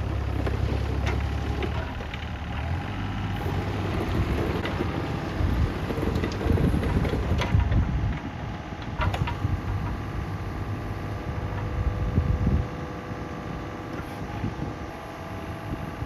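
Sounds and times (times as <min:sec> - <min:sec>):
diesel engine running: 0:00.0 - 0:16.0
wind rumble on microphone: 0:03.4 - 0:16.0.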